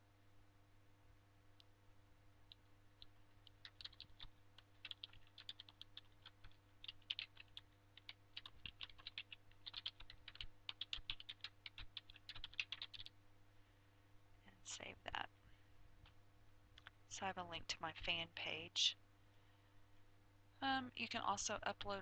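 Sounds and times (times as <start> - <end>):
faint electrical hum: 0.0 - 22.0
typing on computer keyboard: 3.4 - 13.1.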